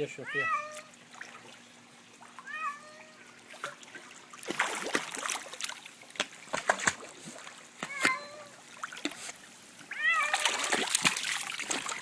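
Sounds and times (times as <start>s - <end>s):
cat meowing: 2.4s - 3.2s, 7.9s - 8.5s, 9.9s - 10.6s
scuffling or splashing: 3.5s - 12.0s.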